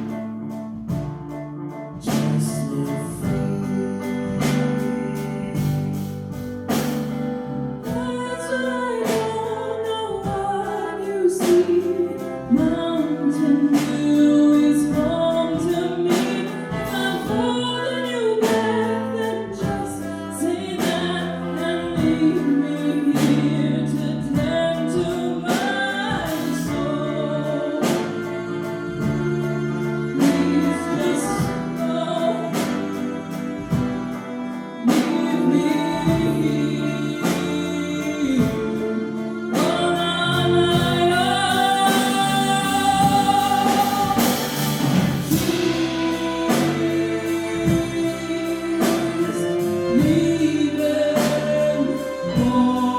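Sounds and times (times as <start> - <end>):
person singing: 1.7 - 6.8, 7.8 - 52.9.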